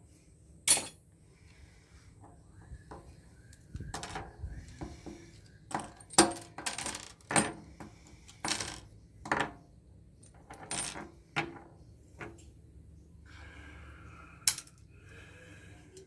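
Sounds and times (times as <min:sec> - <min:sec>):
metal parts clinking into containers: 0:00.7 - 0:01.0, 0:03.8 - 0:04.8, 0:05.7 - 0:09.6, 0:10.2 - 0:11.6.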